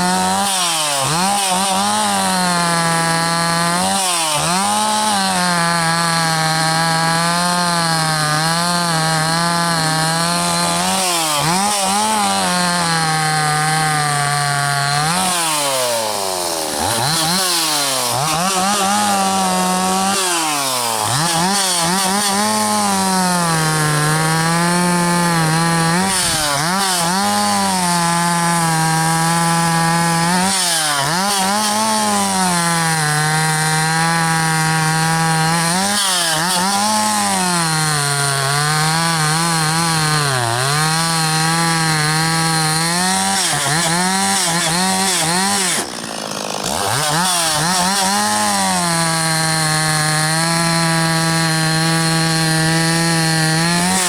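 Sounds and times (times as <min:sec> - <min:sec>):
chainsaw cutting wood: 0:00.0 - 0:54.0.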